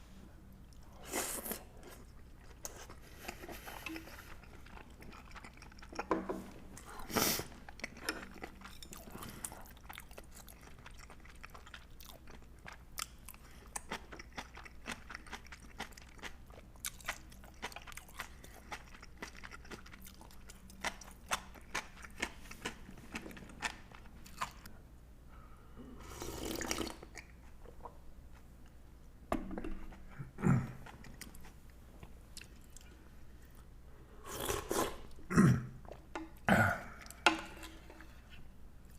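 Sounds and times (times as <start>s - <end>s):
chewing and crunching: 1.8s - 6.1s, 7.5s - 24.7s.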